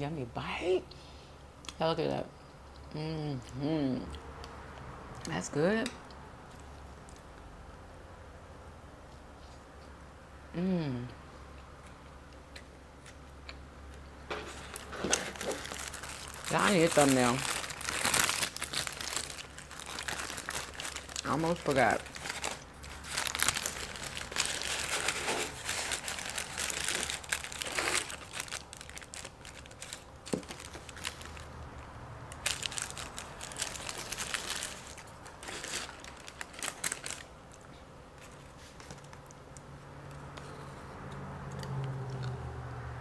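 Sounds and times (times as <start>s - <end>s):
food packaging crinkling: 14.3s - 31.6s, 32.3s - 39.4s.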